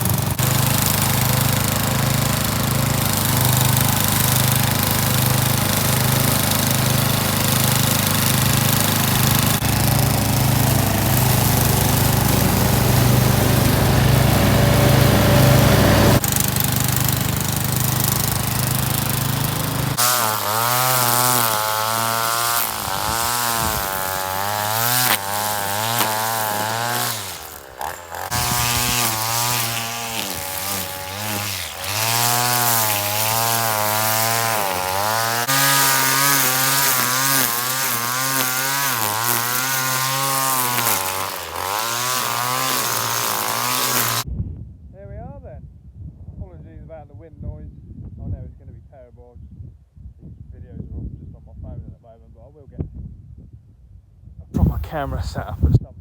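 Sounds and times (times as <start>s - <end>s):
petrol engine running: 0.0s - 44.2s
strimmer revving: 0.0s - 44.2s, 54.6s - 55.6s.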